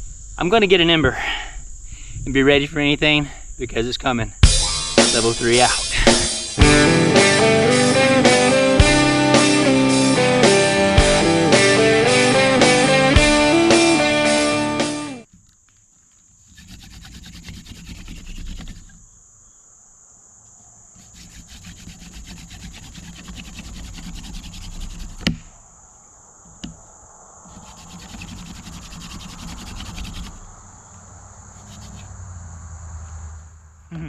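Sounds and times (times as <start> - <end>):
crickets chirping: 0.0 - 34.0
spindle rubbing in fireboard: 16.2 - 19.1, 20.9 - 25.5, 27.4 - 30.6, 31.6 - 32.1.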